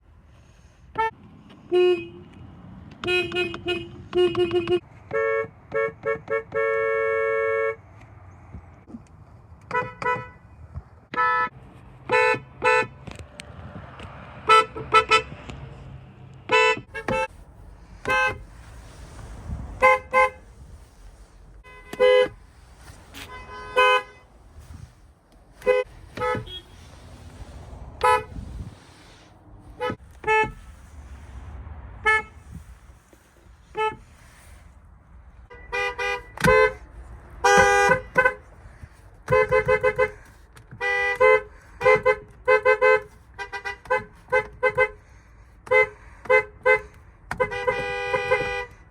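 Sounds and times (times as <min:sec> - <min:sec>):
car horn beeps: 0:01.7 - 0:07.8, 0:09.7 - 0:10.4, 0:11.1 - 0:11.5, 0:12.1 - 0:13.0, 0:14.4 - 0:15.4, 0:16.5 - 0:17.4, 0:18.0 - 0:18.6, 0:19.4 - 0:20.5, 0:21.6 - 0:24.8, 0:25.6 - 0:27.0, 0:28.0 - 0:28.4, 0:29.8 - 0:30.7, 0:35.5 - 0:38.5, 0:39.3 - 0:45.0, 0:45.6 - 0:48.9.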